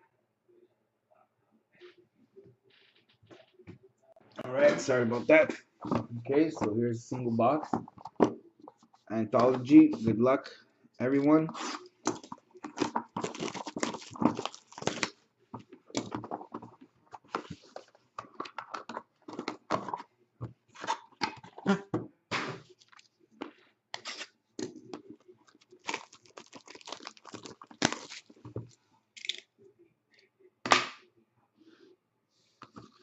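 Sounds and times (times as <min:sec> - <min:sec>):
plastic wrap and cardboard tearing: 0:11.6 - 0:15.1, 0:25.6 - 0:28.4.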